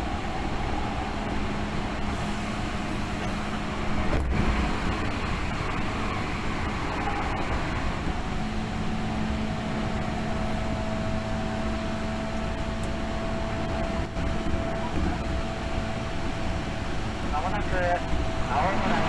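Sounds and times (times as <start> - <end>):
wheels rumbling on rails: 0.0 - 19.0
low hum: 4.0 - 19.0.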